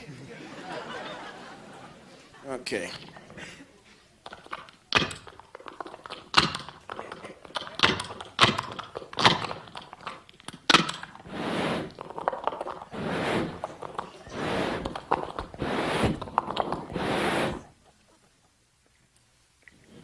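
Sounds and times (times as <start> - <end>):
rasping breathy mouth noises: 11.1 - 17.8.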